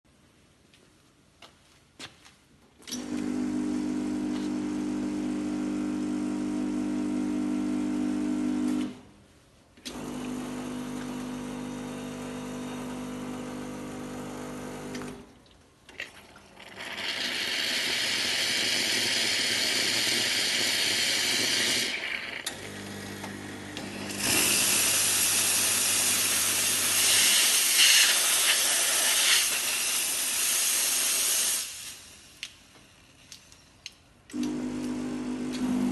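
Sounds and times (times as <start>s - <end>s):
espresso machine pump humming: 3.0s - 8.9s, 9.9s - 15.2s, 16.6s - 28.1s, 34.4s - 35.9s
steam wand hissing: 24.2s - 32.3s.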